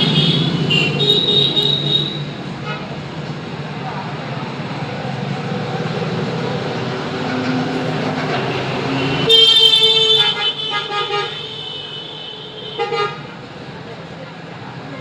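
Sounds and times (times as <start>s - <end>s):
vehicle horn honking: 0.0s - 2.9s, 8.4s - 13.4s.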